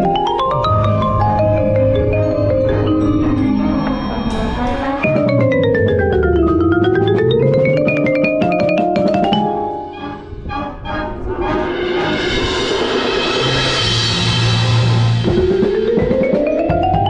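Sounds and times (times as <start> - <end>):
quick bright musical notes: 0.0 - 10.3, 14.8 - 17.0.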